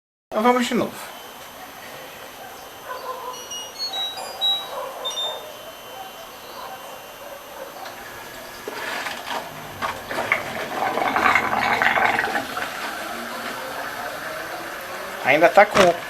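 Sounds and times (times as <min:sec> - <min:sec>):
water splashing into washer tub: 0:09.3 - 0:14.1.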